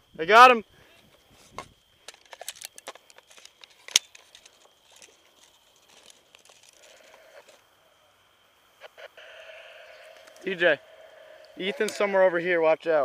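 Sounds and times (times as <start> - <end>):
light crackling and rustling: 0.9 - 7.7.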